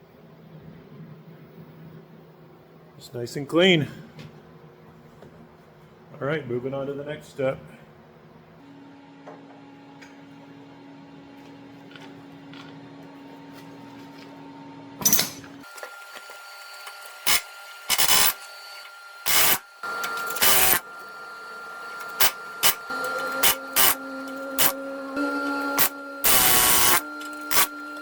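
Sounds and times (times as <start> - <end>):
air hammer bursts: 17.2 - 18.5, 19.2 - 20.8, 22.1 - 24.0, 24.6 - 24.8, 25.8 - 27.8.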